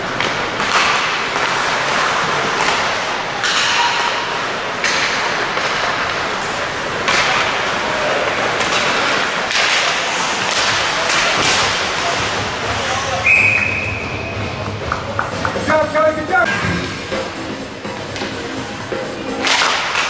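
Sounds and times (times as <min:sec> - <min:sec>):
skate and stick noise: 0:00.0 - 0:20.0
puck thuds against boards: 0:08.6 - 0:12.2
referee's whistle: 0:13.2 - 0:14.5.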